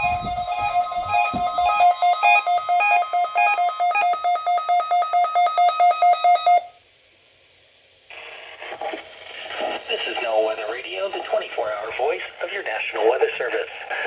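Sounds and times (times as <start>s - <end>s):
rapid electronic beeping: 0.0s - 6.7s
radio announcer speaking: 9.6s - 14.0s.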